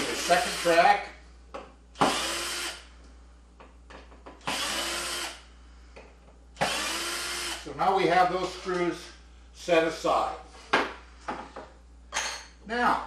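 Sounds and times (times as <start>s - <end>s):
power screwdriver motor whine: 4.5s - 5.4s, 6.6s - 7.6s.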